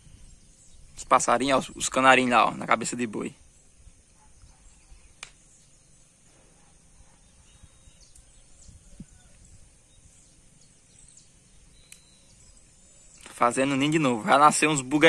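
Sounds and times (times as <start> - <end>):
rural background noise: 0.0 - 15.0
finches chirping: 3.4 - 15.0.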